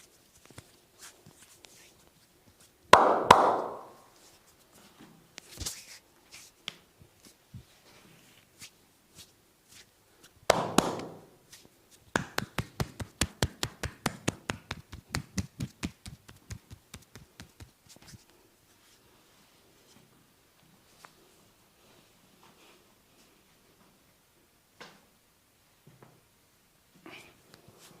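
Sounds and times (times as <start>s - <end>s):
hands slapping body: 3.0s - 4.0s, 10.5s - 11.2s, 12.1s - 18.1s
slapping rub: 10.5s - 18.4s.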